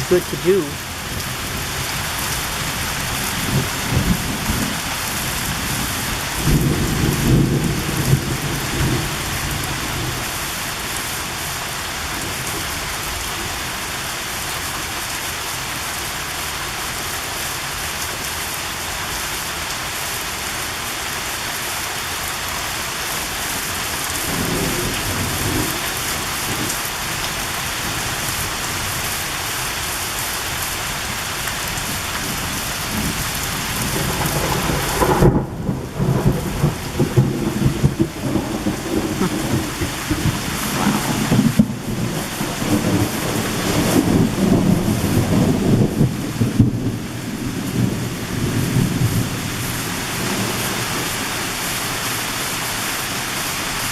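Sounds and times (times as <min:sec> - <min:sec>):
thunder rumbling: 0:00.0 - 0:10.3, 0:31.8 - 0:51.1
heavy rain pouring: 0:00.0 - 0:53.9.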